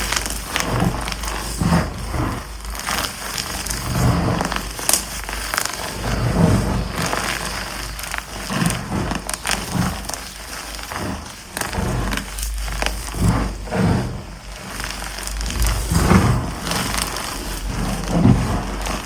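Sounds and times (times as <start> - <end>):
chalk blocks crunching and cracking: 0.0 - 19.0.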